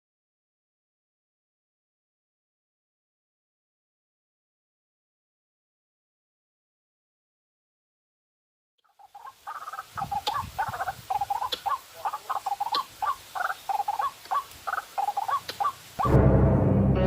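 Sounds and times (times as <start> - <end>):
waterhen croaking calls: 8.8 - 16.1
faint sharp clicks: 11.4 - 11.7, 14.2 - 14.7, 15.4 - 15.7.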